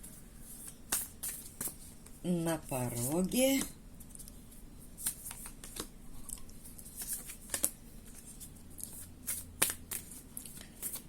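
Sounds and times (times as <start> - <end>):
cards flicking and slapping: 0.9 - 1.8, 5.0 - 11.0.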